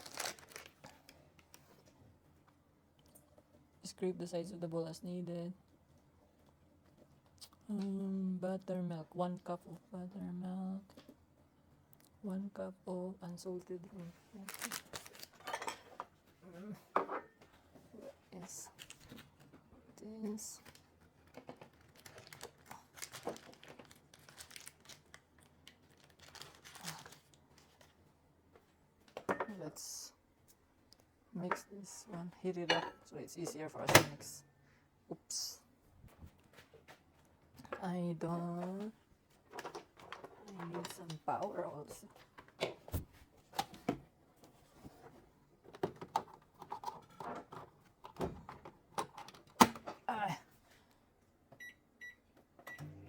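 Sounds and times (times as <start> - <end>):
packaging crinkling: 0.0 - 1.6, 14.3 - 15.5, 20.6 - 27.9.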